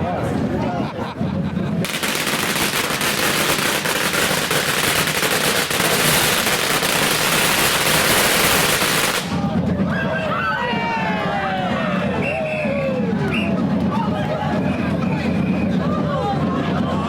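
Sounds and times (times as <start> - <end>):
firecrackers crackling: 1.8 - 9.8.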